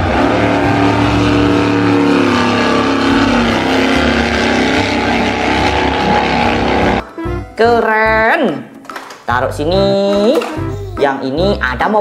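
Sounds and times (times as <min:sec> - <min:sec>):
vehicle engine running: 0:00.0 - 0:07.0.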